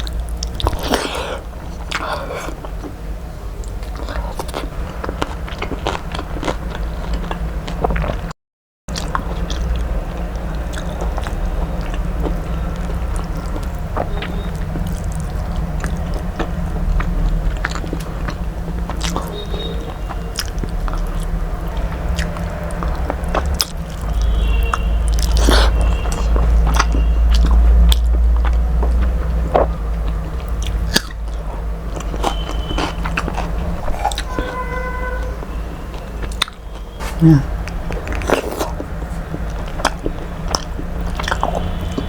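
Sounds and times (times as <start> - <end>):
person chewing: 0.0 - 3.0, 3.6 - 8.3, 10.6 - 19.4, 20.1 - 34.6, 36.2 - 42.0.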